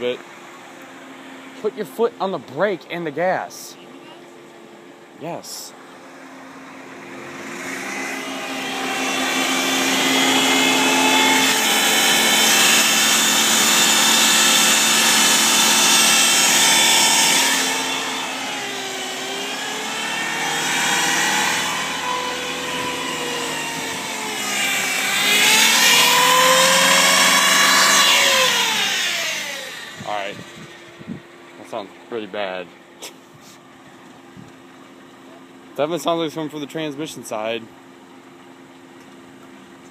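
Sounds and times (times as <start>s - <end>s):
car engine revving: 6.0s - 31.0s.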